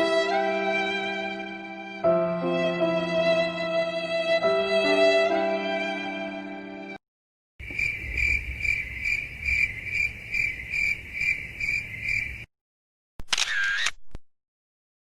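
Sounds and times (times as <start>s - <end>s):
crickets chirping: 7.6s - 12.5s.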